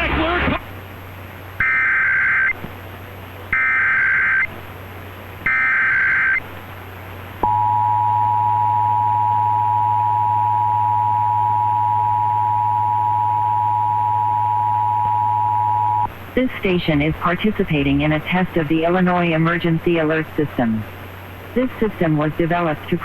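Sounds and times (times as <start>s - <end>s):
low hum: 4.0s - 22.8s.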